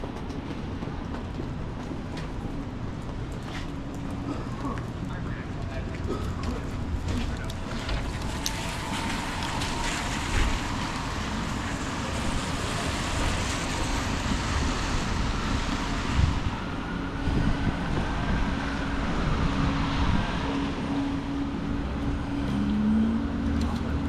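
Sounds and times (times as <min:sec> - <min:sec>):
wind on microphone: 0:06.8 - 0:23.6
tyres hissing on wet road: 0:07.3 - 0:17.1.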